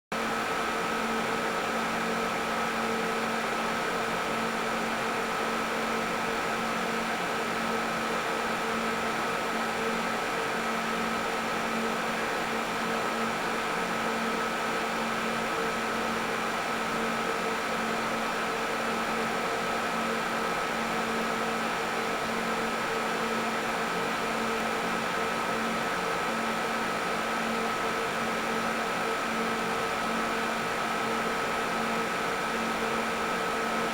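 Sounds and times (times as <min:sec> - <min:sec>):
server machines and fans whirring: 0:00.2 - 0:33.9.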